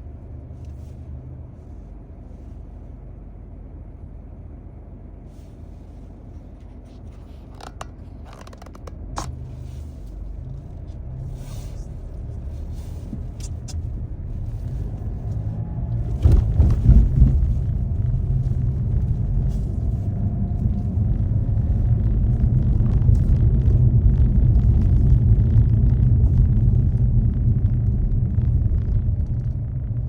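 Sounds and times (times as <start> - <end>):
car engine and tyre rumble: 0.0 - 30.0.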